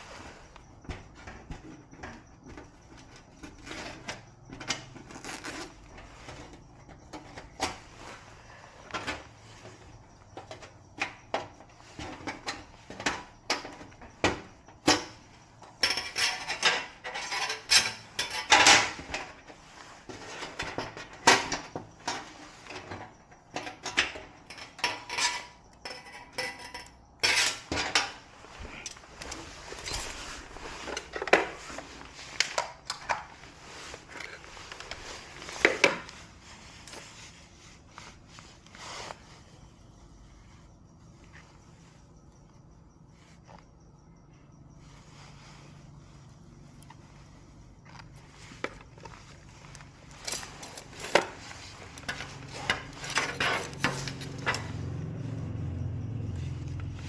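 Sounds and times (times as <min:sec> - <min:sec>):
small hard objects clattering: 0:28.6 - 0:37.3, 0:48.6 - 0:54.7.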